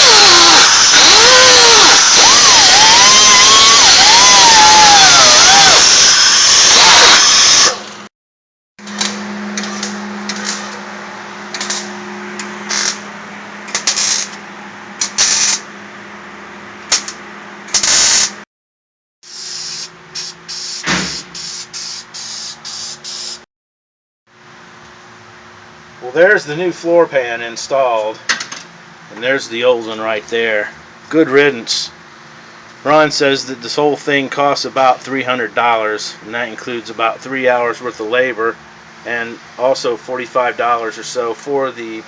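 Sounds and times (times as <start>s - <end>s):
air tool running: 0.0s - 7.9s, 13.7s - 14.4s, 15.0s - 15.7s, 17.7s - 18.4s, 19.2s - 23.4s
mig welder bursts: 0.0s - 7.9s, 11.5s - 11.9s, 12.6s - 13.0s, 13.7s - 14.4s, 15.0s - 15.7s, 16.9s - 18.4s, 19.3s - 23.4s.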